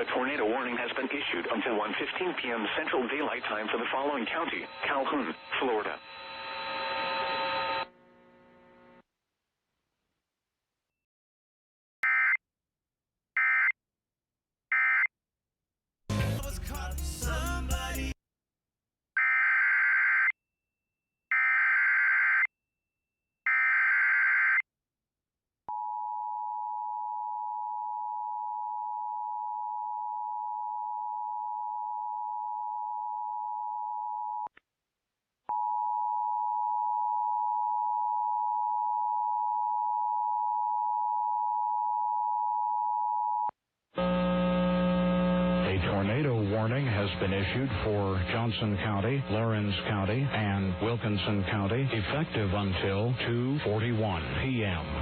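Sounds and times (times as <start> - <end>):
spoken warning message: 0.0 - 6.1, 45.7 - 55.0.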